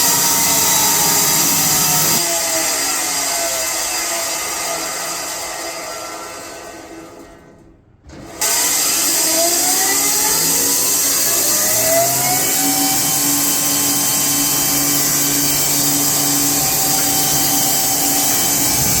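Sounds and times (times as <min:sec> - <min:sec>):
sawmill rushing hiss: 0:00.0 - 0:02.2, 0:08.4 - 0:19.0
rising saw whine: 0:00.0 - 0:06.6, 0:08.4 - 0:19.0
low hum: 0:11.5 - 0:19.0.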